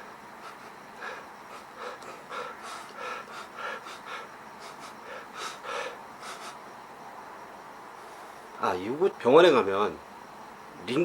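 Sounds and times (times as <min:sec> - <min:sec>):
man sniffing hard: 0:00.4 - 0:06.6.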